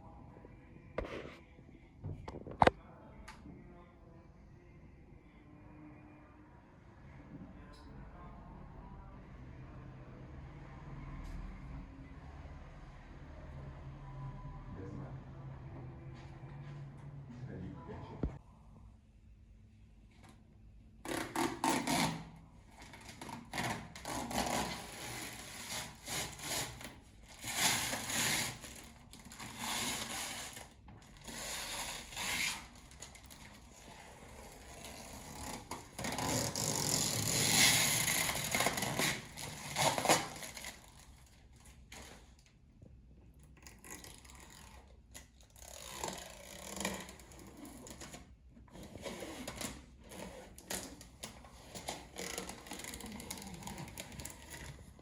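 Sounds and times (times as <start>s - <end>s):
objects scraping and clattering: 45.9s - 55.0s.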